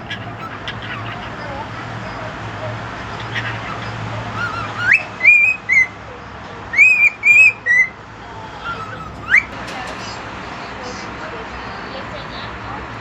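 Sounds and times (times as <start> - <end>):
cockatiel whistling: 0.0 - 1.9, 3.1 - 6.0, 6.7 - 8.0, 8.6 - 9.6.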